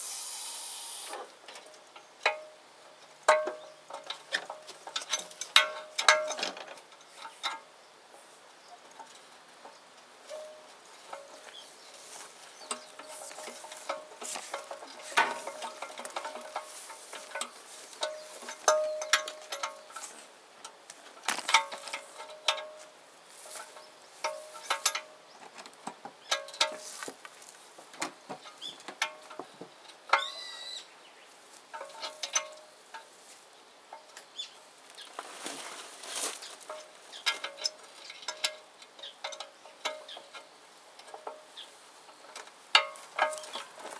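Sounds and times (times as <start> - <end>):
metallic clinks of steel parts: 12.7 - 20.2, 23.5 - 25.1
short squeak: 30.2 - 30.9.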